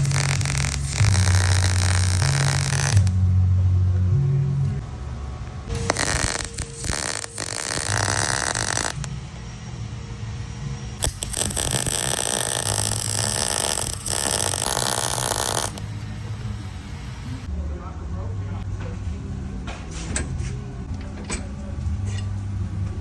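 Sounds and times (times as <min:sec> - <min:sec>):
welding arc crackling: 0:00.0 - 0:03.2, 0:05.7 - 0:09.2, 0:11.0 - 0:15.9.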